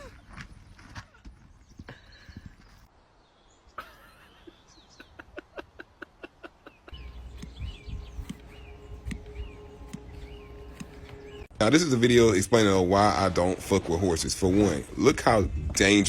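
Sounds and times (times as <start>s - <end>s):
horse hooves clip-clopping: 0.0s - 2.9s.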